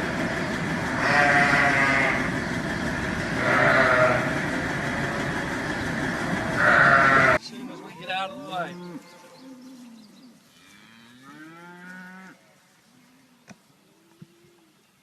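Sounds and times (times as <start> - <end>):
cattle mooing: 0.9 - 2.3, 3.3 - 5.3, 6.5 - 9.4.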